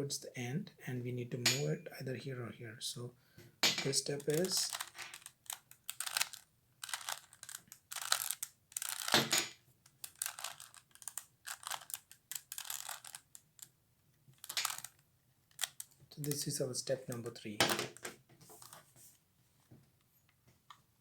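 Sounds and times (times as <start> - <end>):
puzzle cube clicking turns: 3.9 - 9.2, 9.8 - 13.7, 14.4 - 18.0.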